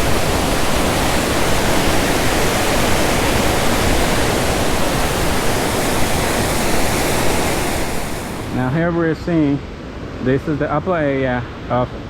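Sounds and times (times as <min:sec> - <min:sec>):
waterfall rushing: 0:00.0 - 0:09.1.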